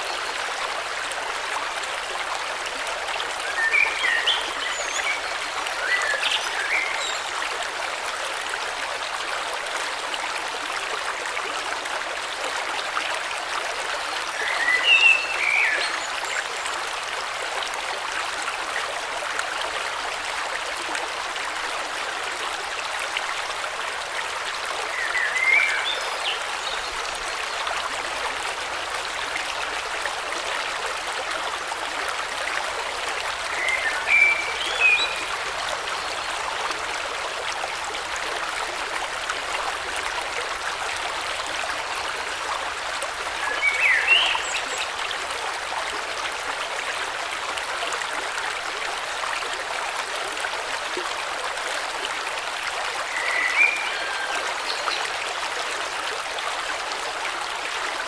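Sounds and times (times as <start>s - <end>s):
stream flowing over stones: 0.0s - 58.0s.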